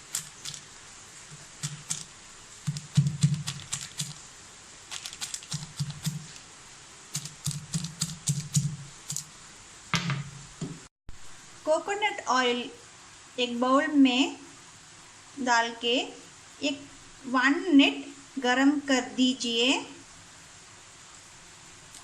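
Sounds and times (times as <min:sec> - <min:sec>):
tablet being crushed: 0:04.9 - 0:06.3.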